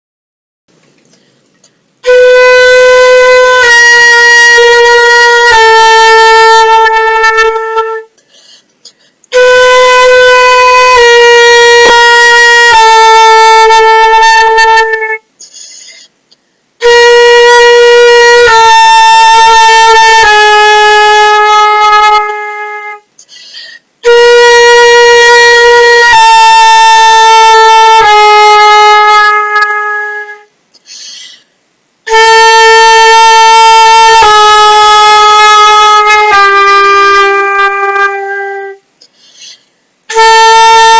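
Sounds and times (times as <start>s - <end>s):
flutist breathing: 1.0s - 1.8s, 8.1s - 9.3s, 15.4s - 16.7s, 23.2s - 24.0s, 30.7s - 31.6s, 39.0s - 40.0s
flute playing long tones: 2.0s - 8.2s, 9.3s - 15.3s, 16.8s - 23.1s, 24.0s - 30.6s, 32.0s - 40.9s.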